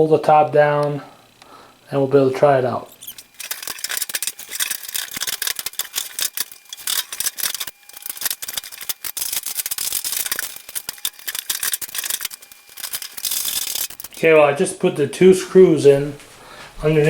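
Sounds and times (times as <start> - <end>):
sheet metal parts clicking and rattling: 2.9 - 14.3.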